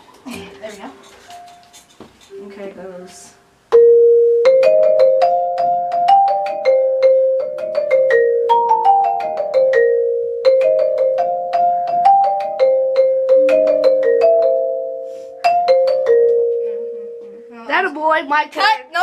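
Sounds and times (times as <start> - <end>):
mallet keyboard melody: 3.7 - 17.9.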